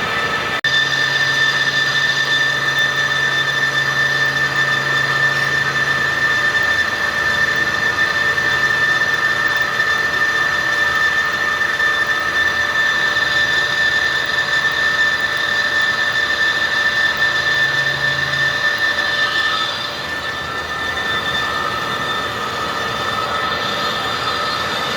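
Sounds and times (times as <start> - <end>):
cutting tool squealing: 0.0 - 24.9
metal lathe running: 0.0 - 24.9.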